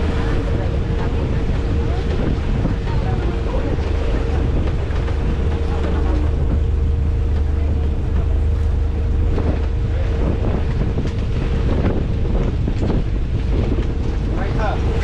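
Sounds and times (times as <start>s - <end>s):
boat engine running: 0.0s - 15.0s
wind buffeting microphone: 0.0s - 15.0s.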